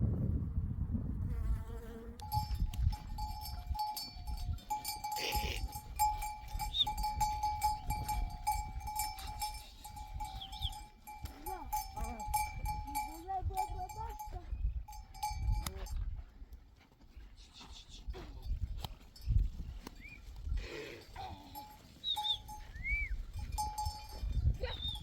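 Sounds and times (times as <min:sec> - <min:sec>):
sheep bells clanking: 0:02.2 - 0:16.1, 0:18.5 - 0:25.0
sheep bleating: 0:05.0 - 0:06.0.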